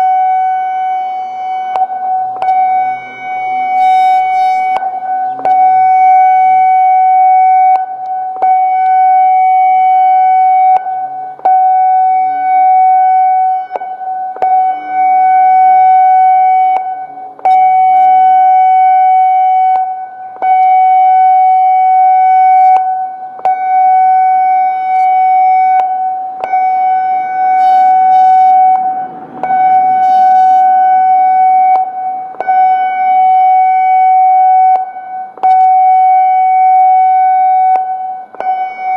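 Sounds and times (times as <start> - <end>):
electronic siren warning tone: 0.0 - 38.9.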